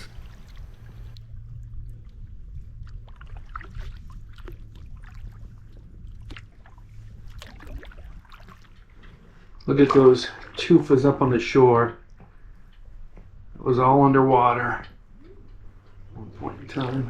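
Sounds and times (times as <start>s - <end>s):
paddle splashing water: 0.0s - 11.3s
steady low rumble: 0.0s - 17.0s.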